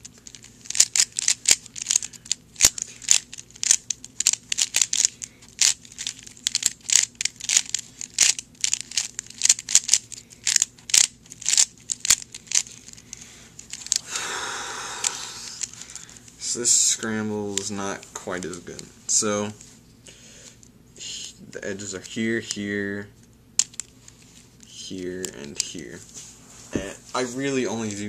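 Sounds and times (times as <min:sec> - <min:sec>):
puzzle cube clacking clicks: 0:00.0 - 0:14.1, 0:15.0 - 0:15.9, 0:23.6 - 0:23.9.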